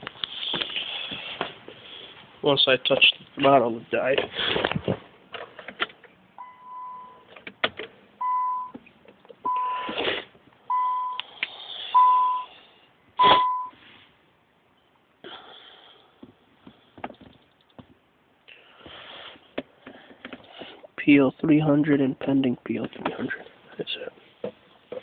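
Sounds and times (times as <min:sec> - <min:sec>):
electronic beeper beeping: 0:12.0 - 0:12.5.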